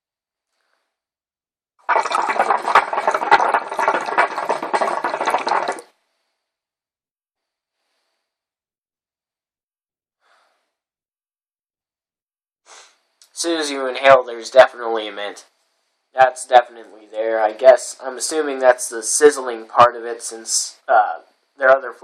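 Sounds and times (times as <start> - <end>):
hookah water bubbling: 1.8 - 5.9.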